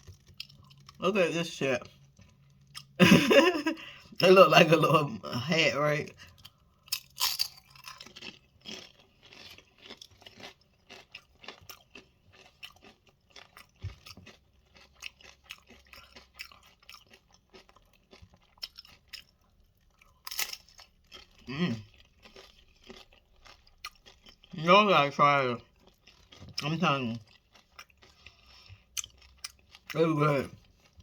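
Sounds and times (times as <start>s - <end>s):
person chewing crisp chips: 0.0s - 31.0s.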